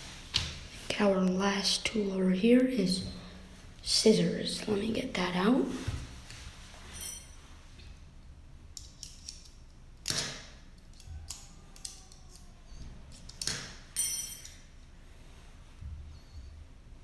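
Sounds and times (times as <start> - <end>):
multi-tool metal clicks and snaps: 8.8 - 12.5.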